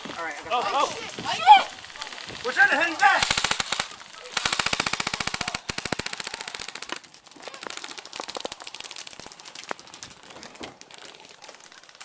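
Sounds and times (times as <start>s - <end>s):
skirmish guns firing: 0.5s - 9.0s.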